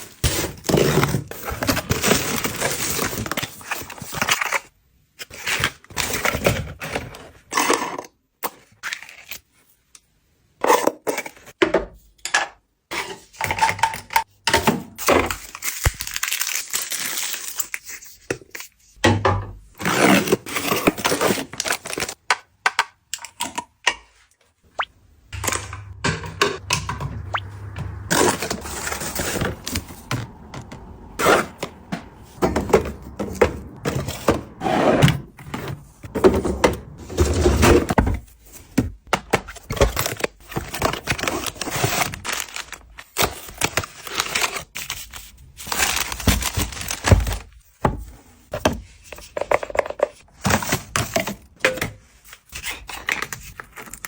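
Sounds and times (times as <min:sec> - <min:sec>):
packaging rustling: 0:15.4 - 0:18.6.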